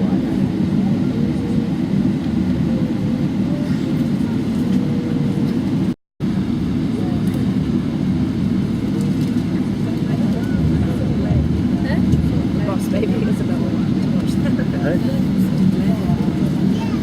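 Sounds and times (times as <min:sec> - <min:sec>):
low rumble of aircraft cabin: 0:00.0 - 0:17.0
faint voices: 0:09.1 - 0:17.0.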